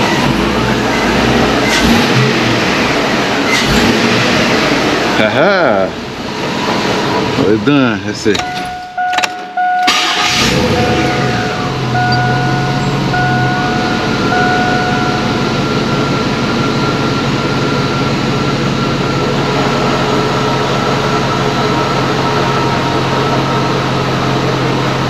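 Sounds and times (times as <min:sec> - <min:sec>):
truck engine idling: 0:00.0 - 0:25.0
thin steady tone: 0:10.8 - 0:15.8.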